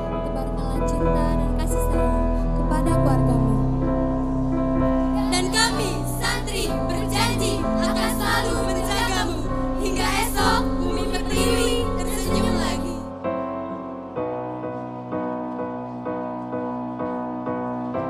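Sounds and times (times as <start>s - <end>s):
sustained keyboard accompaniment: 0.0s - 18.0s
girls' choir singing: 5.1s - 13.1s.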